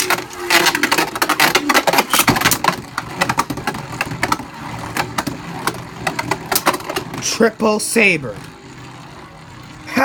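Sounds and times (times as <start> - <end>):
spinning tops clashing with sharp clicks: 0.0 - 7.4
spinning tops whirring: 0.0 - 10.0.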